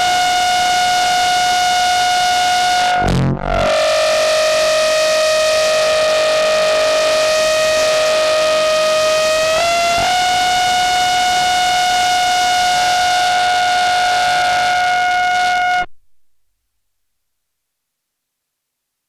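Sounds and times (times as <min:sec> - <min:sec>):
distorted synth tone: 0:00.0 - 0:16.2.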